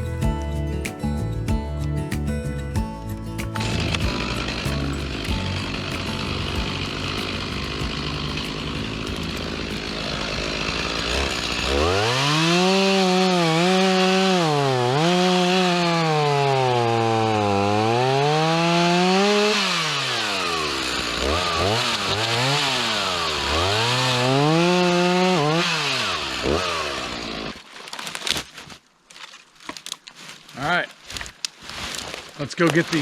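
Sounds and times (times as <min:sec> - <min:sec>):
chainsaw cutting wood: 0:03.4 - 0:28.4.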